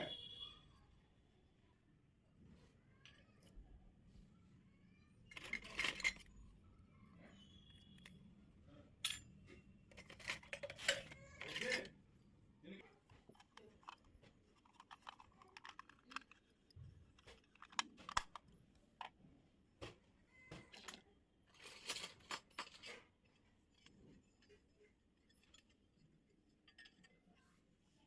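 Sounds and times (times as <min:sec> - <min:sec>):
toy pieces clicking: 0:13.4 - 0:16.6, 0:17.2 - 0:18.4.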